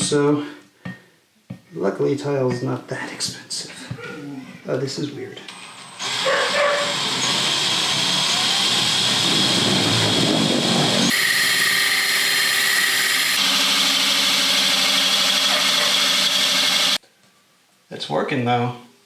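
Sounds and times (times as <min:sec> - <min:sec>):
power drill whining: 0:05.5 - 0:17.0
hole saw grinding through tile: 0:05.6 - 0:17.0.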